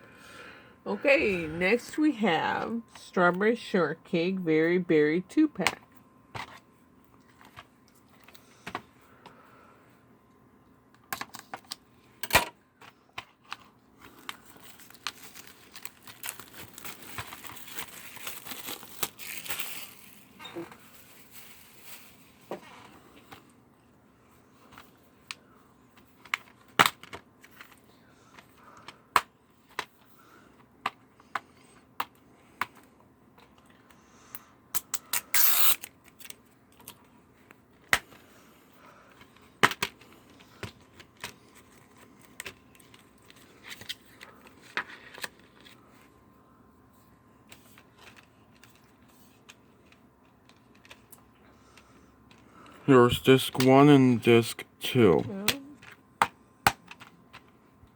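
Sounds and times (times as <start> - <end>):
plastic wrap tearing and crinkling: 14.1 - 22.4, 34.8 - 36.4.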